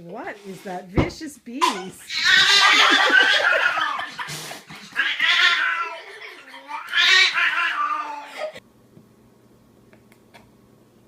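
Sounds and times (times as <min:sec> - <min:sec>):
cat yowling: 0:02.1 - 0:04.0, 0:04.9 - 0:08.6.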